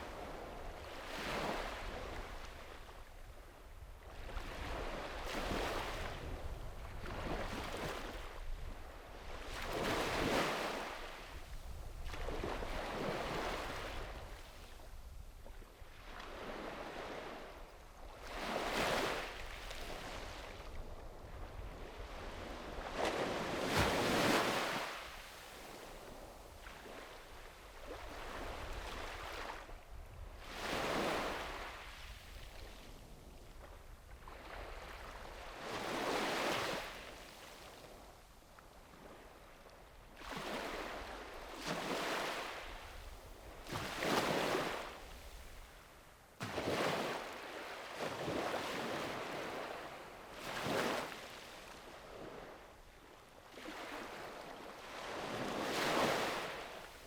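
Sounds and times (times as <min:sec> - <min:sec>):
sea waves breaking on beach: 0:00.1 - 0:02.9, 0:09.4 - 0:14.4, 0:21.6 - 0:29.7, 0:30.4 - 0:32.1, 0:34.3 - 0:37.4, 0:40.2 - 0:45.6, 0:46.4 - 0:52.7, 0:53.5 - 0:57.0.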